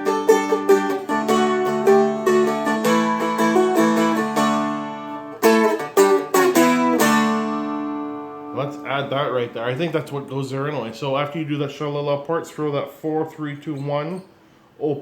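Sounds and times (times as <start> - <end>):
plucked dulcimer notes: 0.0 - 8.6.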